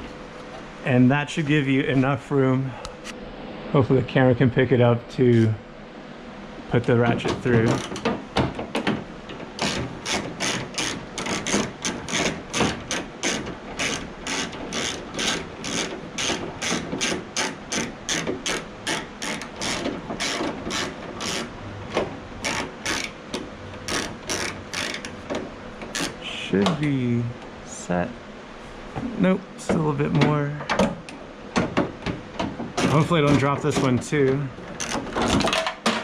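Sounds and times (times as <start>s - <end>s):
ratchet wrench clicking: 9.6s - 21.5s, 22.4s - 23.2s, 23.8s - 25.2s, 34.8s - 35.1s.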